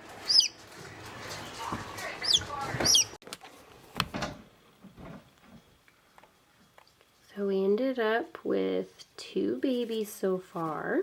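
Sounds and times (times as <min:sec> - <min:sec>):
chicks peeping: 0:00.0 - 0:03.2.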